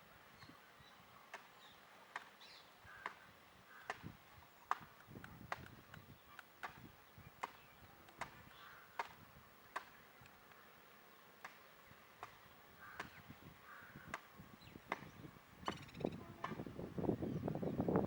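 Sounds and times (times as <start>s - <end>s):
woodpecker tapping on wood: 15.6s - 16.6s.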